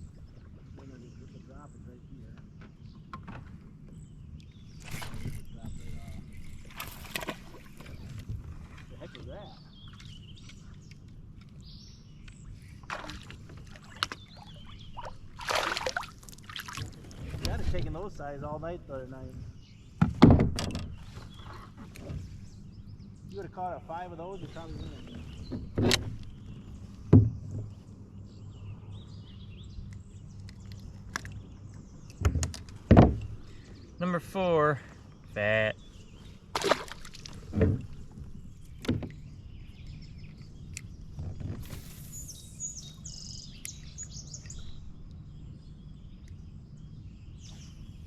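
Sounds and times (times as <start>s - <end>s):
birds chirping and singing: 0.0s - 15.4s, 17.2s - 36.5s, 37.1s - 48.0s
rustling splashy bursts: 15.4s - 16.9s.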